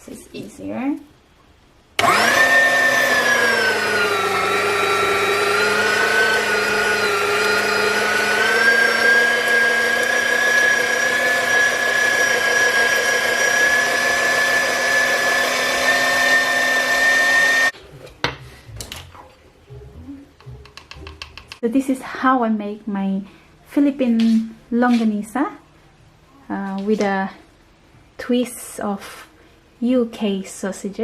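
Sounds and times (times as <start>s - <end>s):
food processor motor whining: 2.0s - 17.8s.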